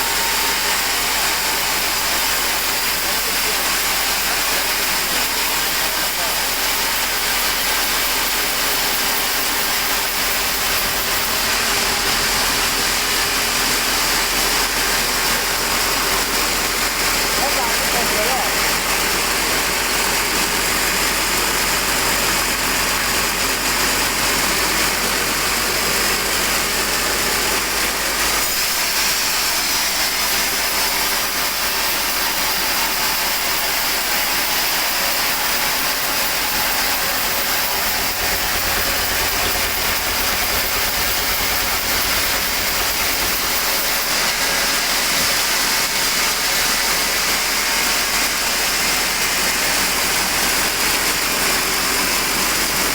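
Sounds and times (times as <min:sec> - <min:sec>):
sawmill saw sawing logs: 0:00.0 - 0:52.9
engine drone: 0:34.2 - 0:52.9.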